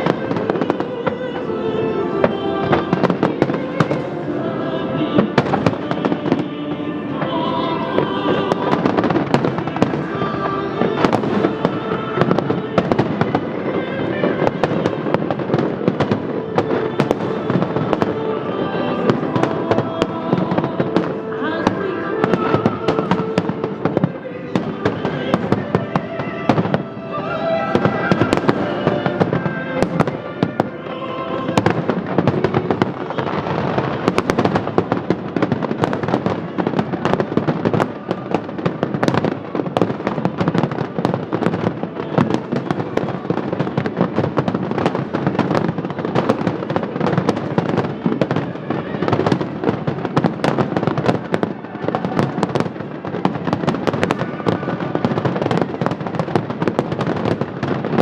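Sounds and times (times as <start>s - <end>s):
music playing: 0.0s - 44.2s
fireworks bangs and crackles: 0.0s - 58.0s.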